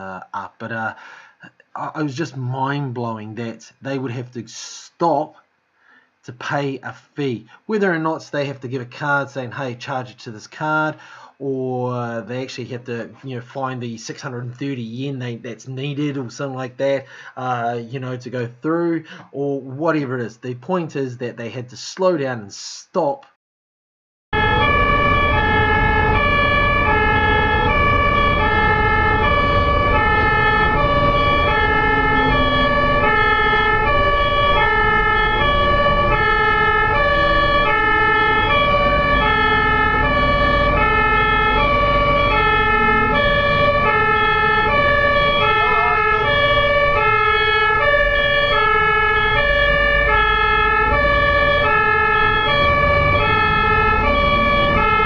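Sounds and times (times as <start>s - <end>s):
ambulance siren two-tone: 24.3s - 55.0s
low road noise: 24.4s - 55.0s.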